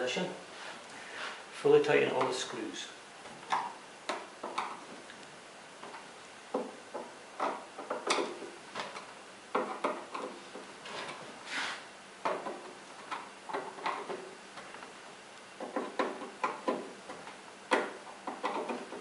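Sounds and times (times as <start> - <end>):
screwdriver clicking and scraping: 15.6 - 19.0.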